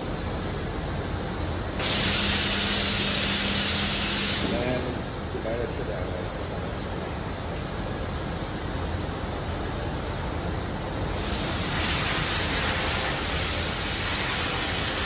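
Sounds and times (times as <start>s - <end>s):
factory machinery running: 0.0s - 15.0s
loud even hiss: 1.8s - 4.9s, 11.0s - 15.0s.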